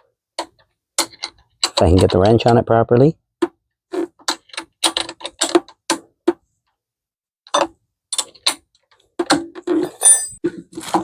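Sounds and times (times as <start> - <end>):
ringing metallic clink: 9.9 - 10.4.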